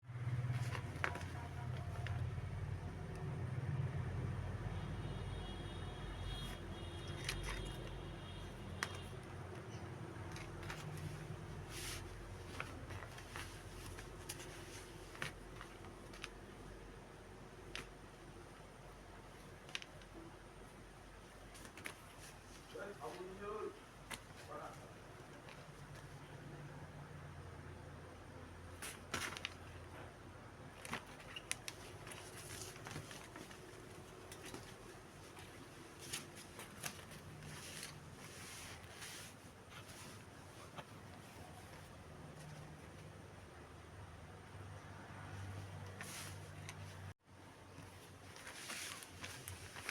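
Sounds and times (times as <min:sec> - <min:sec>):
rustling of clothing and packaging: 0:00.1 - 0:49.9
packaging rustling and clicking: 0:28.8 - 0:29.8, 0:30.7 - 0:38.9.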